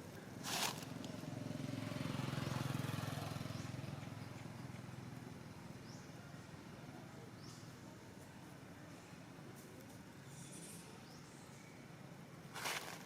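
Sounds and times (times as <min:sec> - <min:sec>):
vehicle engine passing: 0:00.4 - 0:05.2.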